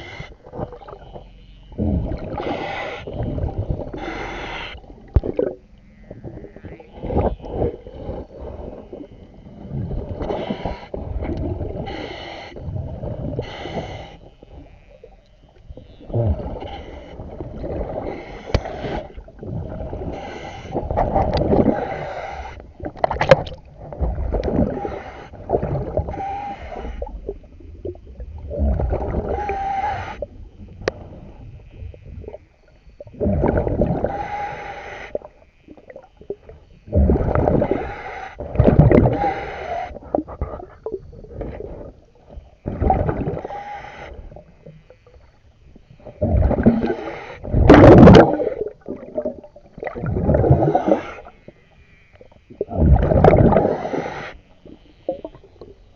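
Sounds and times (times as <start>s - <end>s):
diver breathing through regulator: 1.7s - 5.5s, 6.8s - 14.5s, 16.1s - 23.5s, 24.1s - 27.3s, 28.5s - 31.4s, 33.2s - 35.4s, 36.9s - 42.0s, 42.7s - 44.6s, 46.1s - 49.3s, 50.1s - 51.4s, 52.6s - 55.2s
bubbling exhalations: 1.8s - 4.3s, 5.1s - 5.6s, 33.2s - 34.2s, 46.2s - 51.3s, 52.6s - 54.0s.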